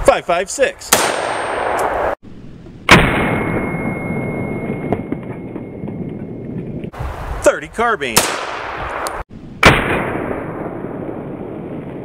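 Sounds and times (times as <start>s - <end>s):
rifle shots: 0.9s - 2.2s, 2.8s - 3.7s, 8.2s - 12.0s.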